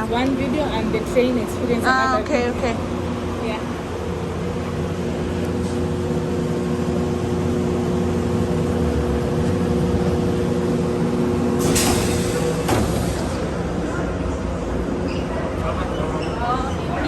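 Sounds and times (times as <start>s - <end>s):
electric drive hum: 0.0s - 11.6s
train rumble inside carriage: 0.0s - 17.0s.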